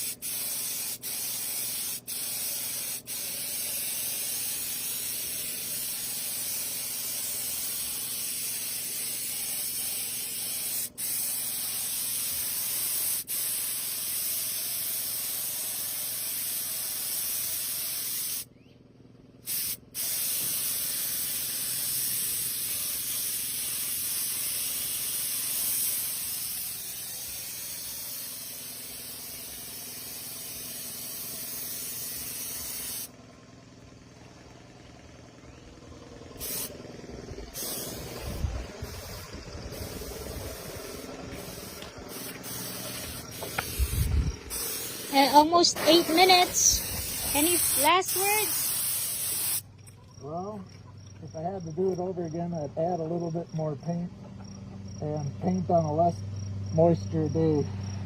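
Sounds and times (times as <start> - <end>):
spray gun hissing: 0.0 - 18.5, 19.5 - 33.1, 36.3 - 36.8, 37.4 - 49.6.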